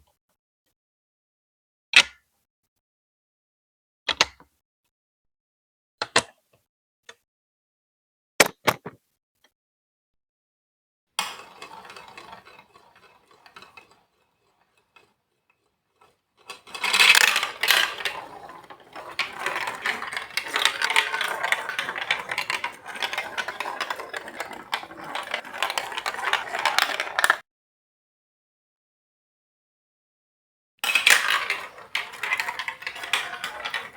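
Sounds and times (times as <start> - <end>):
marbles clattering together: 11.2 - 15.1, 16.0 - 27.4, 30.8 - 33.9
marble rolling on plastic track: 11.2 - 27.4, 30.8 - 33.9.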